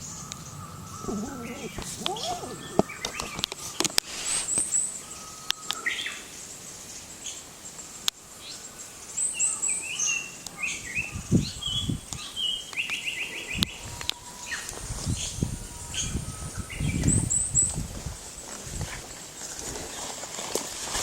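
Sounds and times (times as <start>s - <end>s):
bird singing high notes: 0.0s - 6.3s.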